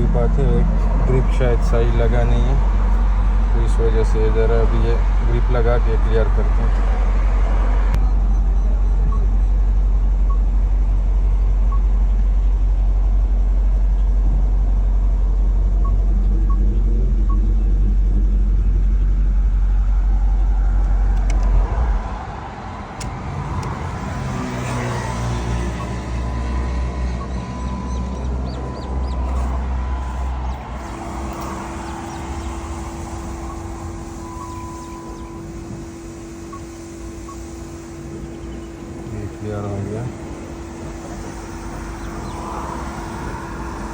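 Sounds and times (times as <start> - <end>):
faint steady tones: 0.0 - 43.9
pickup truck engine rumbling: 0.0 - 43.9
scattered clicks: 20.8 - 21.6.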